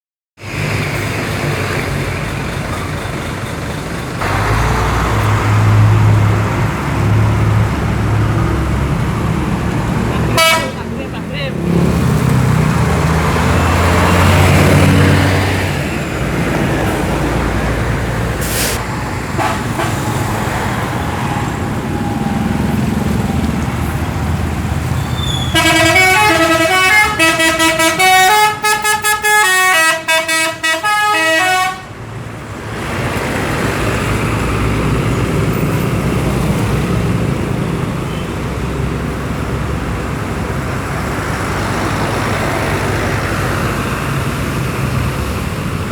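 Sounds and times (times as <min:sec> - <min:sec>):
bus engines running: 0:00.4 - 0:45.9
multi-tone bus horn melody: 0:10.3 - 0:11.0, 0:19.3 - 0:20.5, 0:25.5 - 0:32.0.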